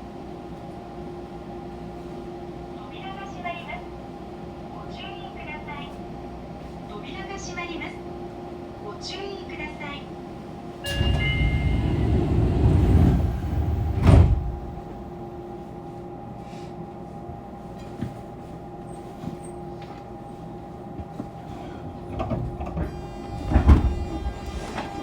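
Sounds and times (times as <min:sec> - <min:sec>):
train equipment humming: 0:06.6 - 0:25.0
train doors sliding shut: 0:10.8 - 0:15.2, 0:21.5 - 0:25.0
doors shutting thud: 0:10.9 - 0:15.0, 0:22.2 - 0:25.0.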